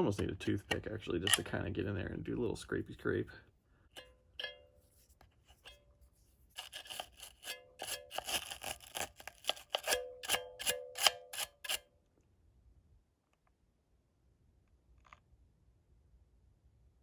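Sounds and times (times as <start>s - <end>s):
scraping metal spring: 6.5s - 11.8s.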